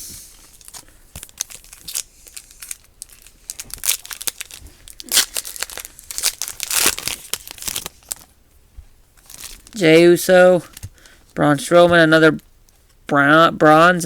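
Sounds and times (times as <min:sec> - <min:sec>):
plastic wrapper crinkling and tearing: 0:00.4 - 0:08.3, 0:09.2 - 0:09.8.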